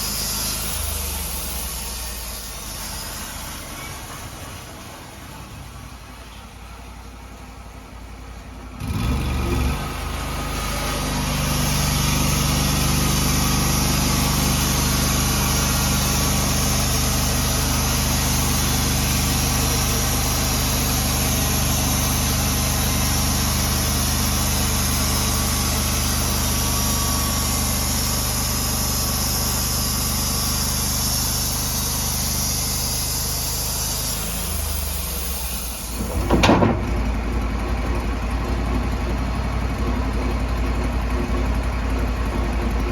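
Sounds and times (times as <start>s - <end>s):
saw cutting log hiss: 0.0s - 5.2s, 9.0s - 36.7s
sawmill engine running: 0.0s - 42.9s
loud knock: 36.0s - 37.1s.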